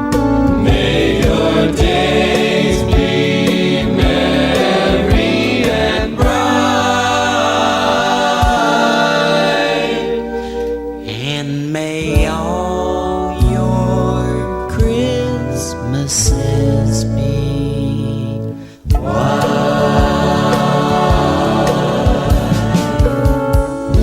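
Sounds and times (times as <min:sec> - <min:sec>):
drumbeat: 0:00.0 - 0:09.2, 0:18.9 - 0:24.0
choir-like singing: 0:00.5 - 0:11.5, 0:18.9 - 0:24.0.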